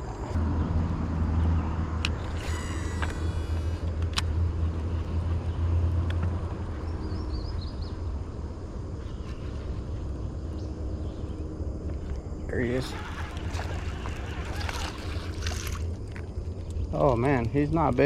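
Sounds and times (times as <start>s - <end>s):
low motor hum: 0.0s - 18.0s
high whirring: 12.6s - 15.9s.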